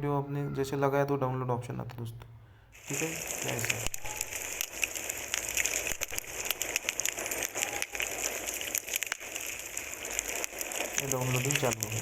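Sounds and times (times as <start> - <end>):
crackling rain-like hiss: 2.7 - 12.0.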